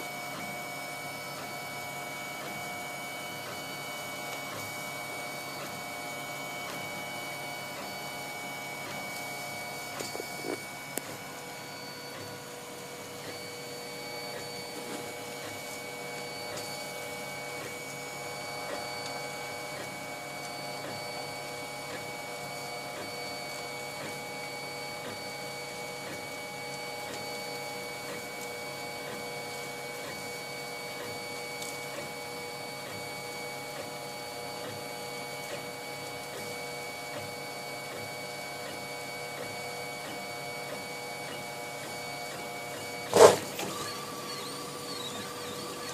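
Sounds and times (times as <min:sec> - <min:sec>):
stepper motors whining: 0:38.6 - 0:45.9.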